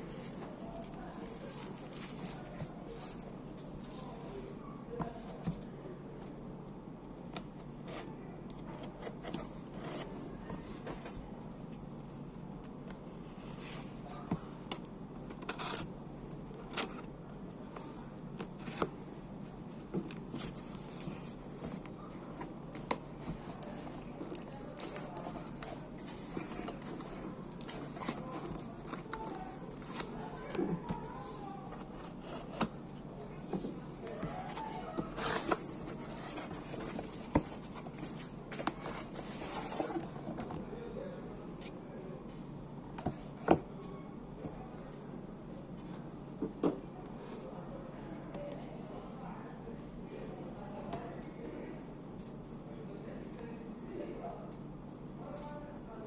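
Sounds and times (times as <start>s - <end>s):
packaging rustling and scraping: 0.0s - 4.5s, 17.7s - 32.8s, 33.4s - 40.6s.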